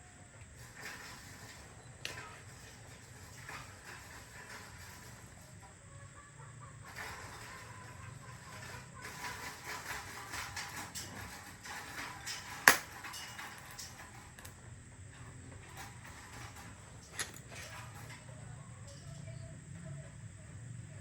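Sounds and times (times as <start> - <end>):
tools and metal parts clicking: 0.4 - 5.7, 6.8 - 19.3.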